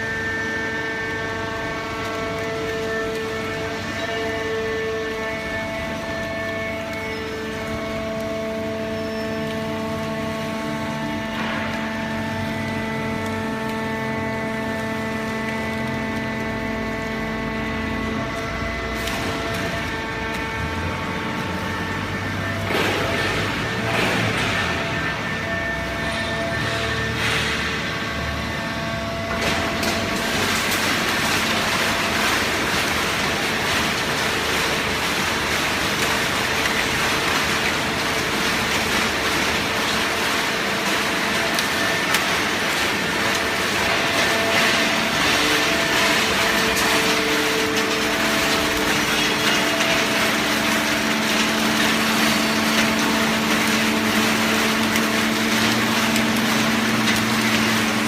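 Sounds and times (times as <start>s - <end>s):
baling press mechanical din: 18.6s - 58.0s.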